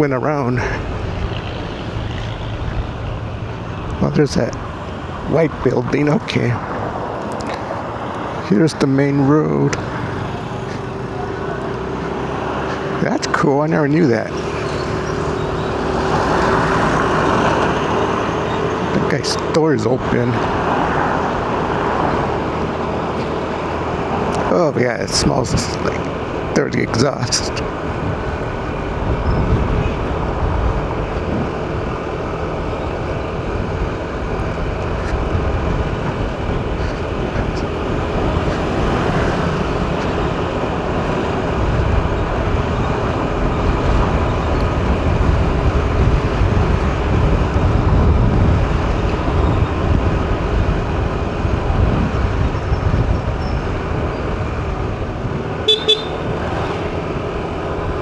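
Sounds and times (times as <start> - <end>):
car road and engine noise: 0.0 - 58.0
car horn toots: 55.6 - 56.4.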